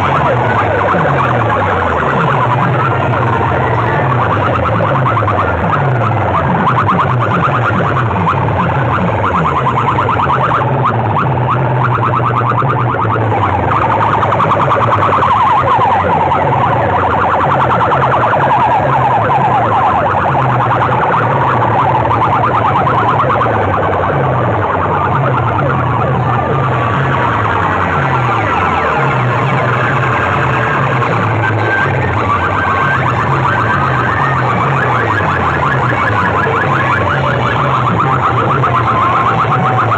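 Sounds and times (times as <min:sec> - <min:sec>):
siren-like electronic tones: 0:00.0 - 0:39.9
stepping bass line: 0:00.0 - 0:39.9.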